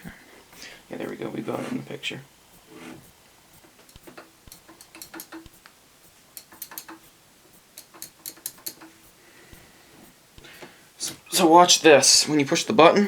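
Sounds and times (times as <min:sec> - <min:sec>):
elevator buttons clicking: 0:03.8 - 0:05.7, 0:06.4 - 0:07.1, 0:07.8 - 0:09.0.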